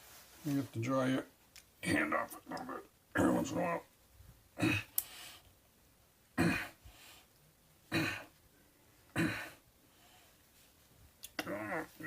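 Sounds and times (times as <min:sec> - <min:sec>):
man clearing throat: 0:04.6 - 0:04.9, 0:06.4 - 0:06.8, 0:07.9 - 0:08.3, 0:09.1 - 0:09.6.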